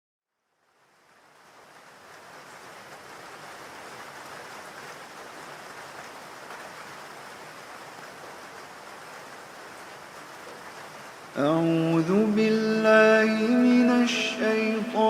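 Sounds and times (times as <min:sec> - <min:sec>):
steady rain falling: 0:00.3 - 0:15.0.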